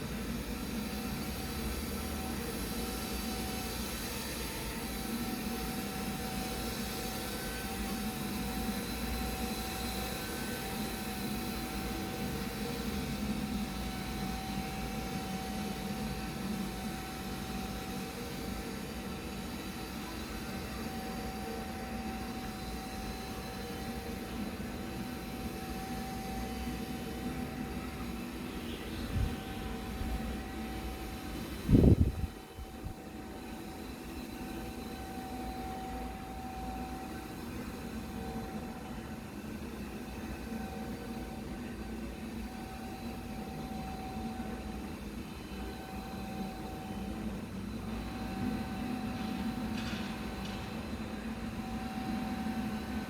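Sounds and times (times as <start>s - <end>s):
suction fan whine: 0.0s - 53.0s
high whine: 26.7s - 33.4s.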